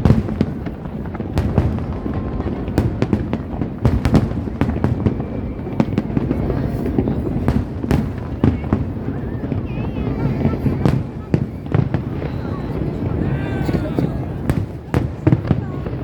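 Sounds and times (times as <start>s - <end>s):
fireworks bangs and crackles: 0.0s - 16.0s.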